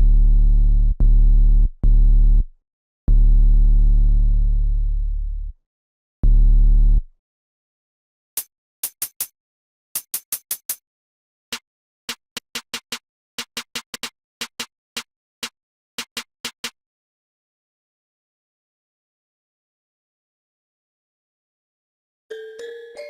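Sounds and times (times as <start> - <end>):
drum machine hits: 11.5 - 15.1, 16.0 - 16.8.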